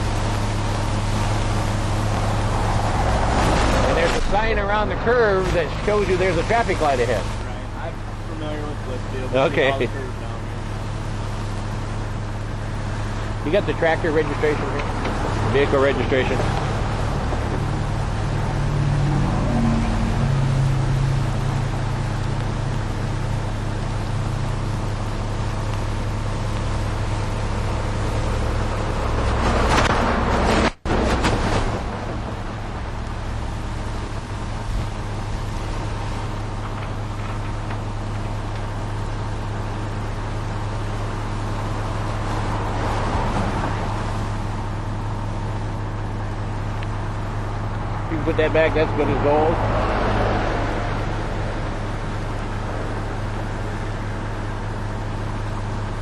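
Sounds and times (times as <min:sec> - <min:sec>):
diesel engine idling: 0:00.0 - 0:31.0, 0:31.7 - 0:56.0
road noise: 0:00.0 - 0:56.0.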